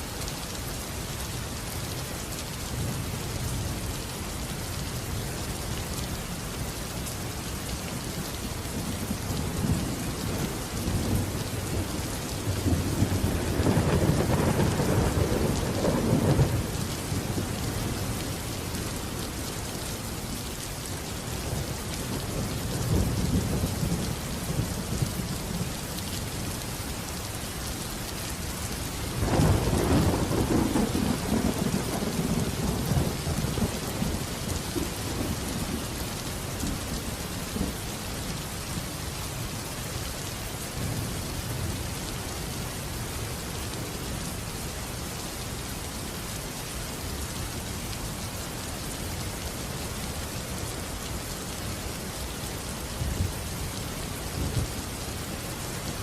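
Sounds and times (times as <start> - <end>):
heavy rain falling: 0.0 - 56.0
thunder rumbling: 9.4 - 17.8, 29.2 - 35.8.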